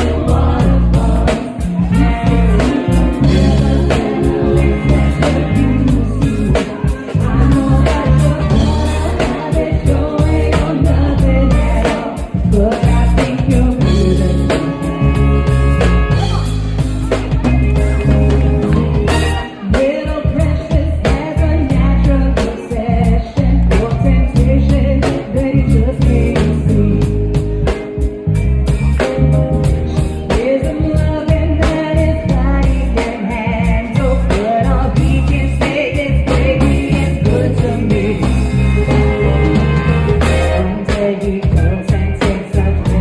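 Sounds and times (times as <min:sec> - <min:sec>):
drum beat: 0:00.0 - 0:20.5, 0:34.0 - 0:43.0
person singing: 0:00.0 - 0:28.1, 0:29.0 - 0:43.0
bass: 0:00.0 - 0:43.0.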